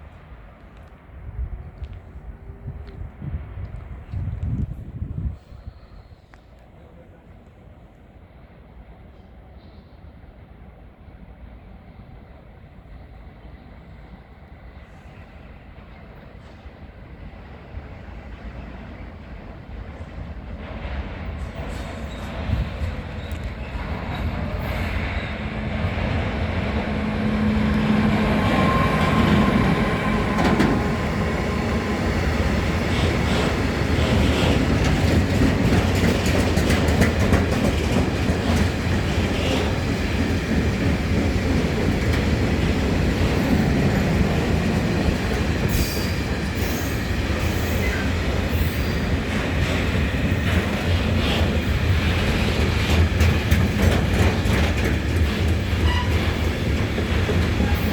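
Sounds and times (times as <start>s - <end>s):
train wheels rumbling: 13.6s - 57.9s
clickety-clack over rail joints: 17.8s - 57.9s
wheel squeal: 55.8s - 56.4s.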